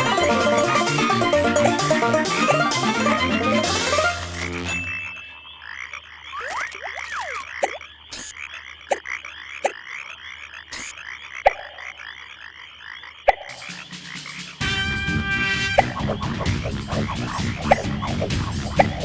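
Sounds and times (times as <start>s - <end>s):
faint high insect chirps: 5.0s - 11.1s
frog chorus croaking: 5.1s - 14.6s.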